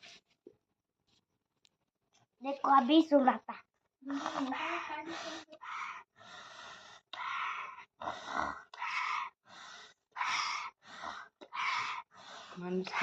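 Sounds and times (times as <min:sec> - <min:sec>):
child breathing hard: 0:04.1 - 0:13.0.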